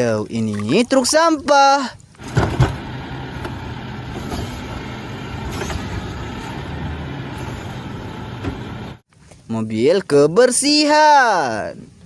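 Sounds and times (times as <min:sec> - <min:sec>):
truck engine running: 0:02.2 - 0:09.0.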